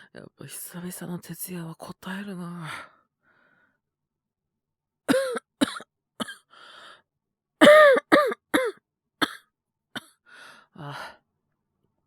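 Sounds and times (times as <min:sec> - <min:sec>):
man coughing: 0:05.1 - 0:06.4, 0:07.6 - 0:09.4.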